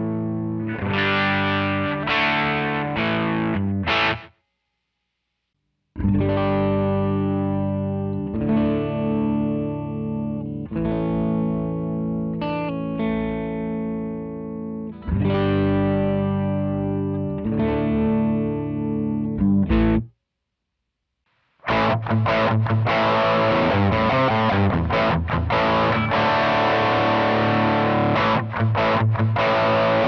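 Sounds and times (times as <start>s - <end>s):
electric guitar chords ringing: 0.0s - 4.3s, 6.0s - 20.1s, 21.7s - 30.0s.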